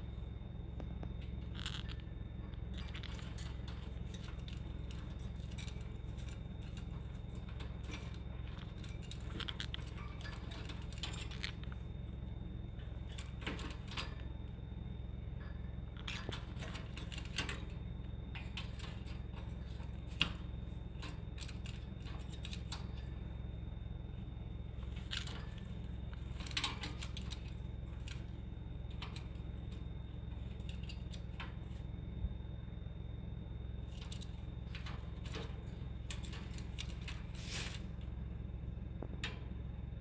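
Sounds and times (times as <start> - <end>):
steady low hum: 0.0 - 40.0
light clicks and scratches: 0.8 - 11.9, 18.4 - 23.2, 24.8 - 31.9, 33.9 - 38.1.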